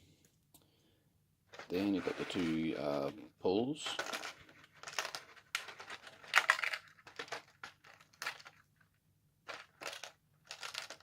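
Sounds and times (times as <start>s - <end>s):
plastic packaging crinkling: 3.9s - 8.7s, 9.5s - 11.0s.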